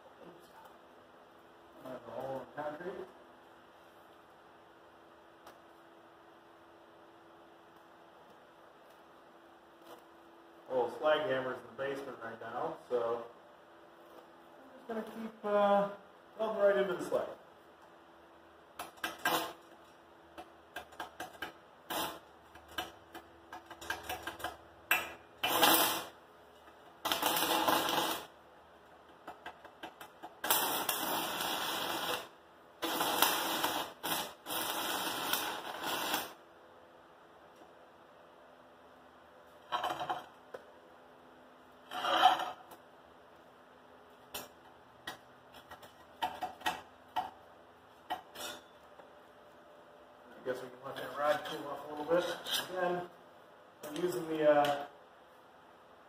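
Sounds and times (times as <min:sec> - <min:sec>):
faint steady hum: 0:00.0 - 0:56.0
welding arc crackling: 0:18.8 - 0:19.8, 0:20.4 - 0:26.2, 0:26.9 - 0:36.5.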